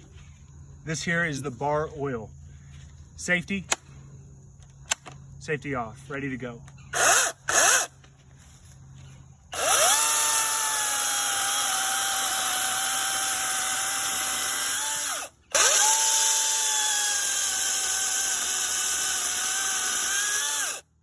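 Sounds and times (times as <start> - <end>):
electric chainsaw whining: 6.9 - 8.0, 9.5 - 21.0.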